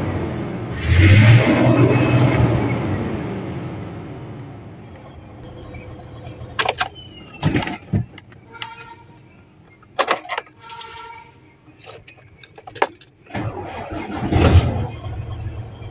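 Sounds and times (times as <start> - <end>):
diesel engine surging and shutting off: 0.0 - 8.4, 13.3 - 15.9.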